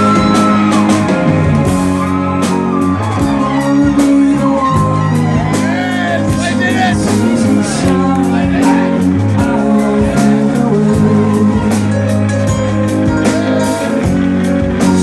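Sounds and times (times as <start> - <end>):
rock band playing: 0.0 - 15.0
person singing: 3.2 - 12.4.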